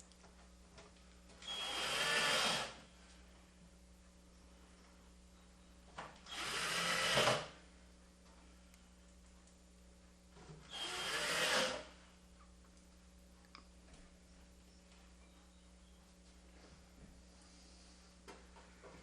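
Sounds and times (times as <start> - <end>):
power driver driving screws: 1.4 - 2.8, 6.3 - 7.5, 10.7 - 11.8.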